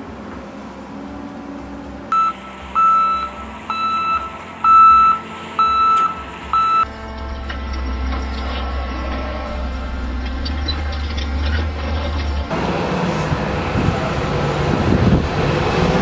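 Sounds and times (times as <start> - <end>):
low engine rumble: 0.0 - 16.0
vehicle reversing alarm beeping: 2.1 - 12.4.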